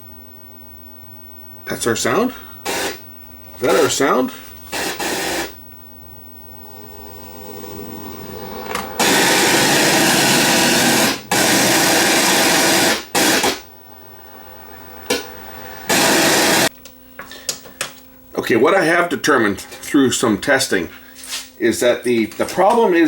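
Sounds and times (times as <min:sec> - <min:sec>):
loud harsh static: 0:01.7 - 0:16.7.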